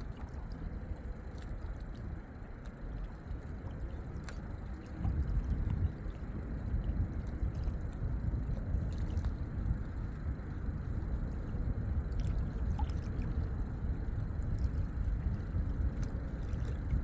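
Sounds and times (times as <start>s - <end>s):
faint water ticks: 0.0s - 17.0s
lake water lapping at shore: 12.1s - 17.0s.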